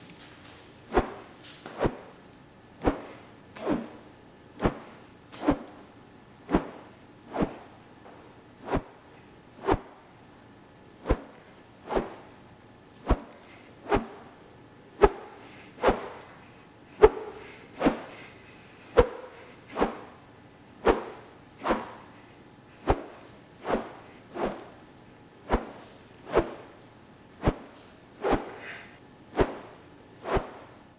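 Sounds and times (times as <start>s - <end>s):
object swishing through air: 0.9s - 2.1s, 2.8s - 4.0s, 4.6s - 5.8s, 6.5s - 10.0s, 11.0s - 12.3s, 13.0s - 14.3s, 15.0s - 16.3s, 17.0s - 18.2s, 19.0s - 20.2s, 20.8s - 22.2s, 22.8s - 24.8s, 25.5s - 26.7s, 27.4s - 30.8s.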